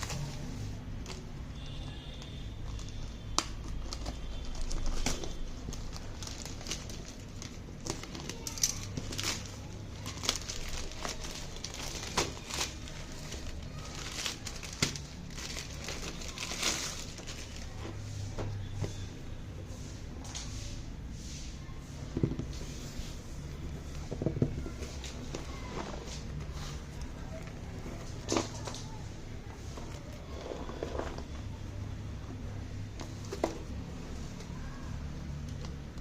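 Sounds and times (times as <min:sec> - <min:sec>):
plastic packaging crinkling: 0:00.0 - 0:18.0.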